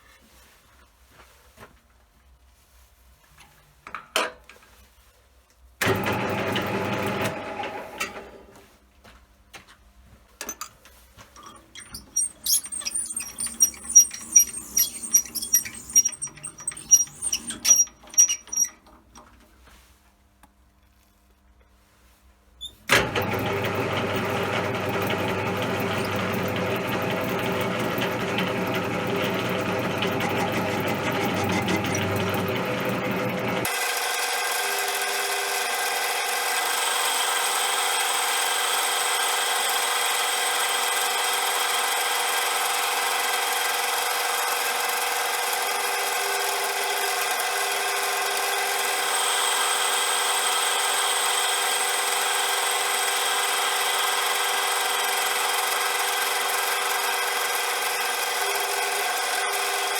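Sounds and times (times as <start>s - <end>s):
bench lathe humming: 11.4s - 18.7s, 23.0s - 34.1s, 44.7s - 59.9s.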